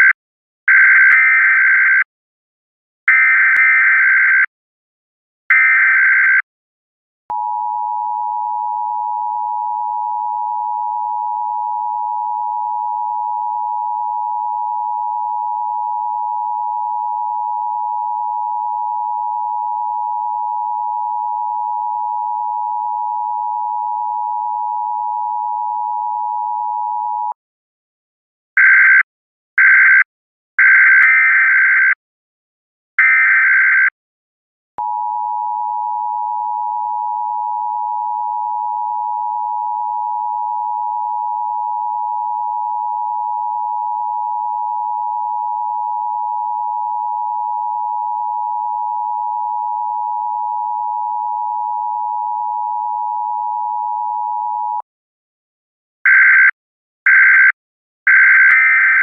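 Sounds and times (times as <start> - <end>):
loud electronic dial tone: 0.0 - 2.1, 3.1 - 4.5, 5.5 - 6.4, 7.3 - 27.4, 28.6 - 32.0, 33.0 - 34.0, 34.8 - 54.8, 56.1 - 59.0.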